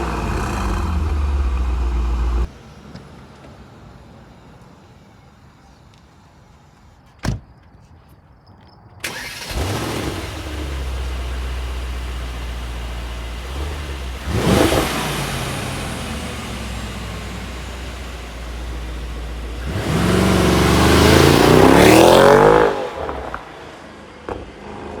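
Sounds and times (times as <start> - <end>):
car engine starting and revving: 0.0 - 2.8, 9.0 - 25.0.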